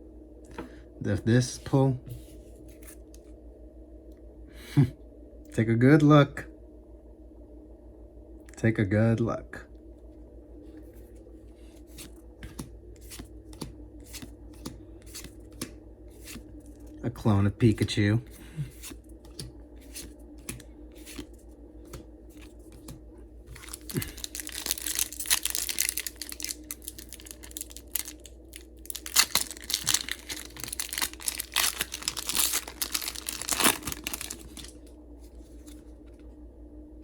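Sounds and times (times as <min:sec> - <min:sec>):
foil wrapper tearing and crinkling: 0:23.6 - 0:34.8.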